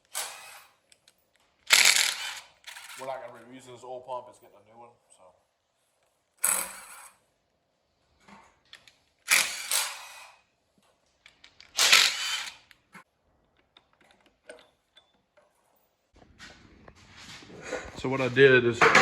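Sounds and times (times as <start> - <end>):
power tool spinning: 0.0 - 1.0, 1.6 - 3.2, 6.4 - 7.1, 9.2 - 10.4, 11.4 - 13.0
parts clicking and knocking: 0.0 - 3.4, 8.2 - 16.2.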